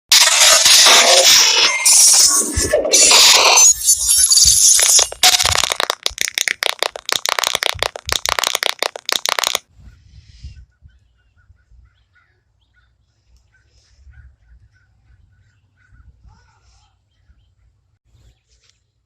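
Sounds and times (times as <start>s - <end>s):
loud dense crackling: 4.5s - 9.6s.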